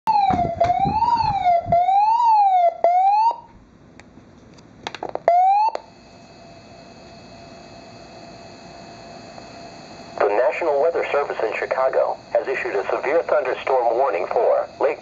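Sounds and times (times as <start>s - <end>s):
electronic wailing siren: 0.1s - 3.5s, 5.3s - 6.0s
radio hiss and hum: 6.0s - 15.0s.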